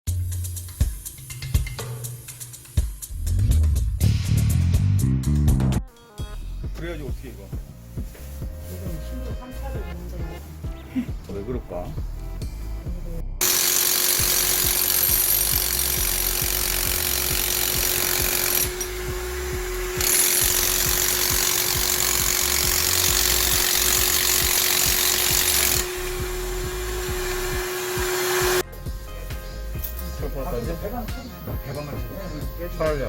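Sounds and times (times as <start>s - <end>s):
hammer drill into concrete: 13.4s - 28.6s.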